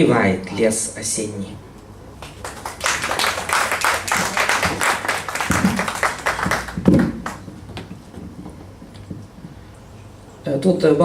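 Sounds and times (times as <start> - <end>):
small audience applauding: 2.2 - 7.7.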